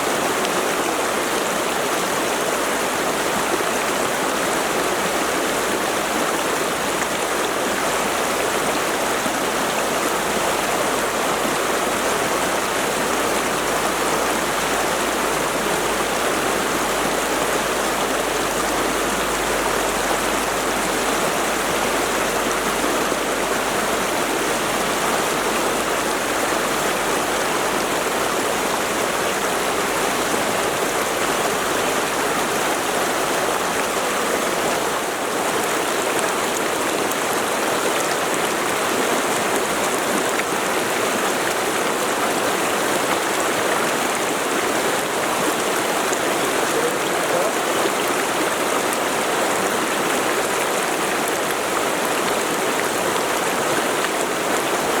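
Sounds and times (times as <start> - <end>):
stream rushing over rocks: 0.0 - 55.0.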